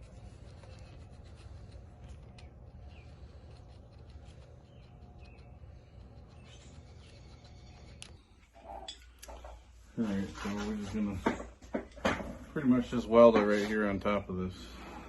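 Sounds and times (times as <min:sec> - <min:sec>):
faint scratching and rubbing: 0:00.0 - 0:11.4
steady low hum: 0:00.0 - 0:15.0.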